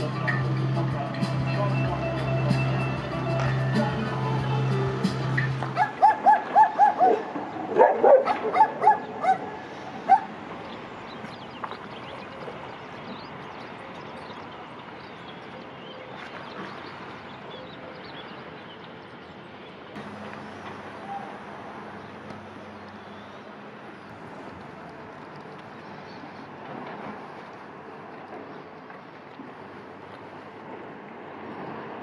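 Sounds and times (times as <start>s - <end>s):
dog yipping and barking: 5.8s - 7.2s, 7.8s - 9.5s.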